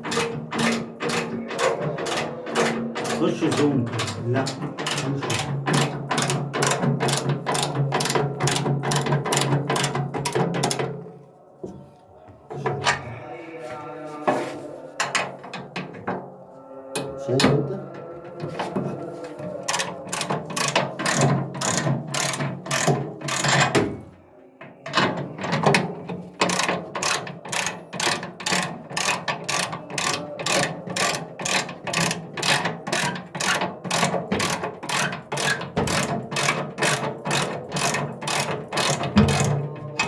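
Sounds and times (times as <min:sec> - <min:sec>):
ratchet wrench clicking: 0:00.0 - 0:10.8, 0:19.6 - 0:23.9, 0:26.4 - 0:39.6.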